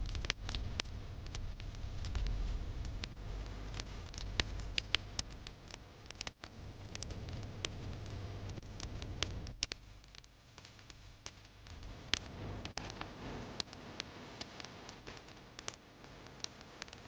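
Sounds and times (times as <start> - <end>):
low steady rumble: 0.0 - 10.2, 11.6 - 14.0
wood fire crackling: 0.0 - 17.0.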